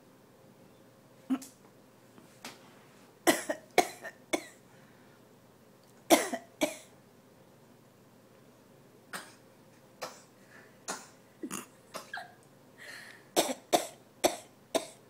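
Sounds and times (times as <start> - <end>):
person coughing: 3.3 - 4.6, 6.1 - 6.9, 10.9 - 12.4, 13.4 - 15.0.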